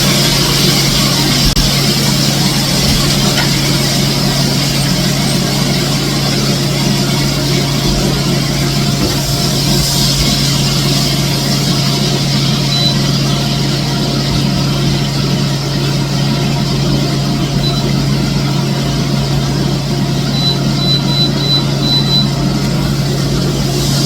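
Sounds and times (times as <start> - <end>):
constant rushing noise: 0.0 - 24.0
low mechanical hum: 0.0 - 24.0
faint high peeps: 20.3 - 22.4.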